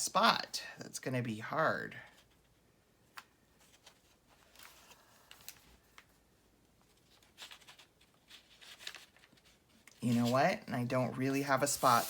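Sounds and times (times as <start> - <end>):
paper sheets rustling: 6.8 - 10.6, 11.4 - 12.0.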